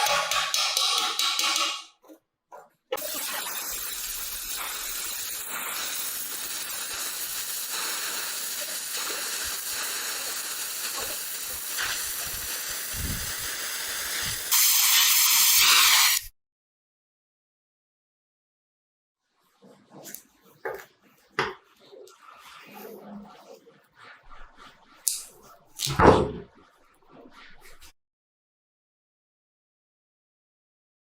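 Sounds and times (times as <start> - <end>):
spraying hiss: 3.0 - 16.3.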